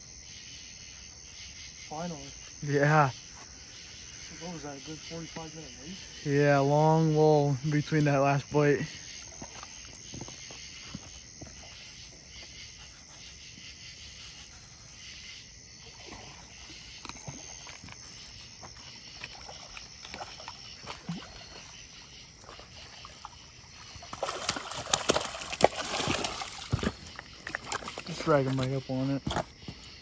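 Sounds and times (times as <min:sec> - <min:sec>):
crickets chirping: 0:00.0 - 0:30.0
fish splashing in water: 0:15.8 - 0:28.8.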